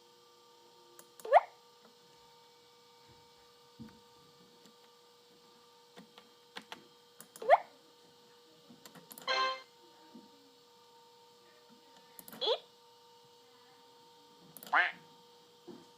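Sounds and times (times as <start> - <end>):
buzzy honking alert sound: 9.2 - 9.7.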